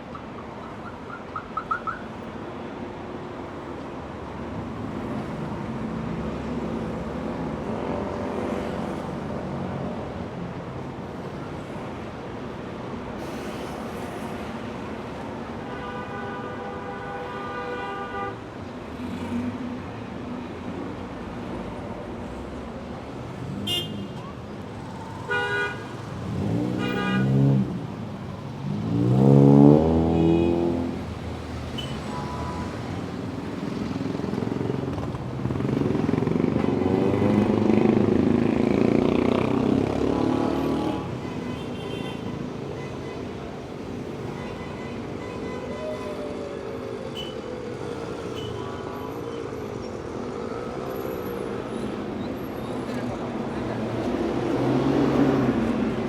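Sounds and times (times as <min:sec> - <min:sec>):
passing cars rumbling: 0:18.8 - 0:45.2, 0:45.8 - 0:56.0
car horn: 0:23.6 - 0:24.2, 0:25.2 - 0:27.6, 0:41.0 - 0:43.4
loud vehicle passing: 0:25.9 - 0:41.2, 0:49.8 - 0:56.0
engine revving: 0:28.7 - 0:31.0.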